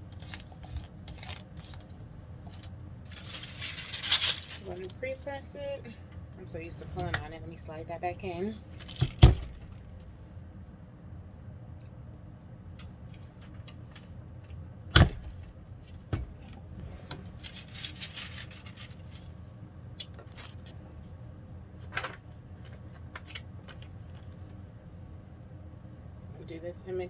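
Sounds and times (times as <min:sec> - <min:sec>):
rustling: 0:00.0 - 0:10.2, 0:16.8 - 0:19.6
low steady hum: 0:00.0 - 0:27.0.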